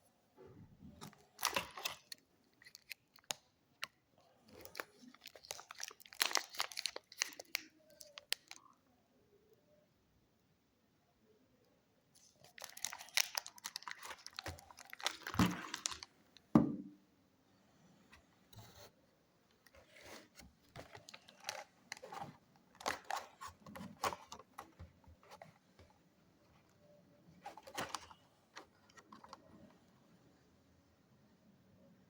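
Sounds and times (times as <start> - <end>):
crinkling and rustling: 0.4 - 8.6, 12.2 - 16.5, 18.1 - 30.0.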